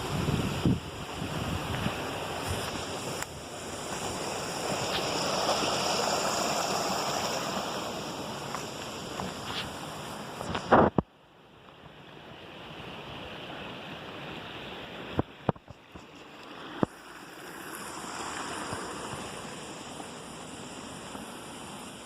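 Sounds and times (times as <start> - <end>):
rushing water: 0.0 - 22.0.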